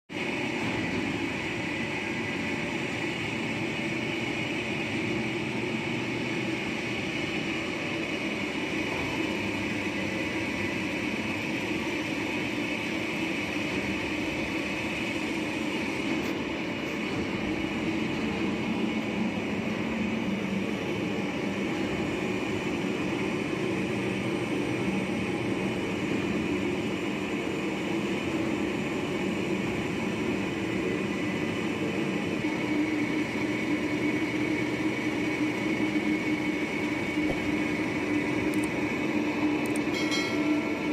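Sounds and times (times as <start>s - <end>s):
lathe machining metal: 0.2s - 40.9s.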